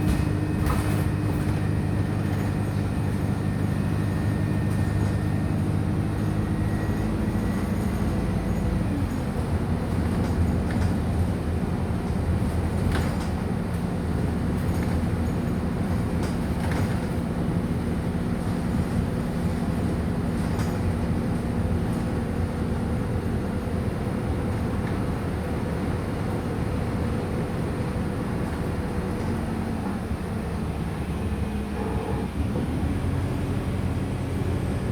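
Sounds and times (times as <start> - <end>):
bus diesel engine: 0.0 - 34.9.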